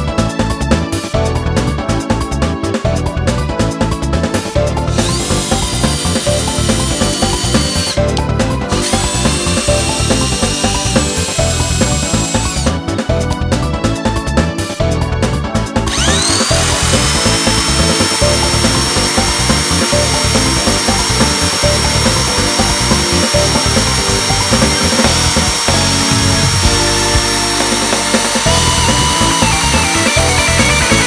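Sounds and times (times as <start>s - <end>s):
background music: 0.0s - 31.0s
electric motor whine: 4.8s - 12.9s, 15.9s - 31.0s.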